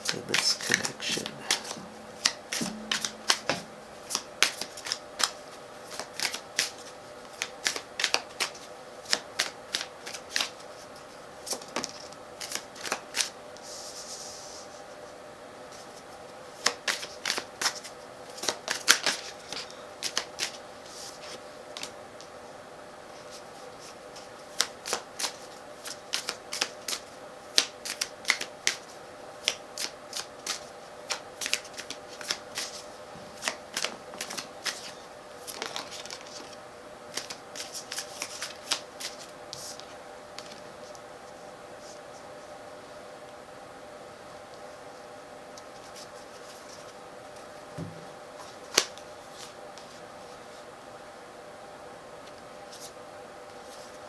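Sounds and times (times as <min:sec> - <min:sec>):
cards shuffling clicks: 0:00.0 - 0:10.6, 0:16.6 - 0:20.6, 0:24.5 - 0:32.8, 0:33.4 - 0:40.6.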